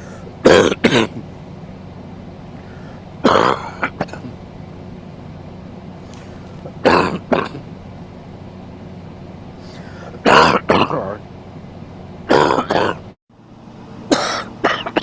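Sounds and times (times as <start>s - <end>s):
steady low hum: 0.0s - 15.0s
man coughing: 0.4s - 1.3s, 3.2s - 4.4s, 6.7s - 7.7s, 10.2s - 11.2s, 12.3s - 13.1s, 14.1s - 15.0s.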